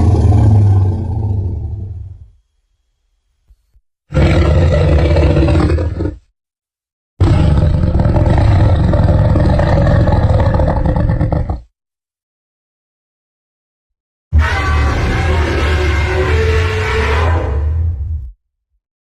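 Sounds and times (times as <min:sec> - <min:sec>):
creature roar: 0:00.0 - 0:02.0, 0:07.2 - 0:11.6, 0:14.4 - 0:17.8.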